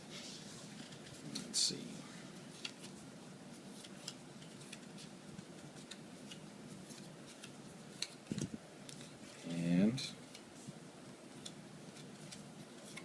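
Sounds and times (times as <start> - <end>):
trading cards handled: 2.5 - 9.2, 11.3 - 13.0.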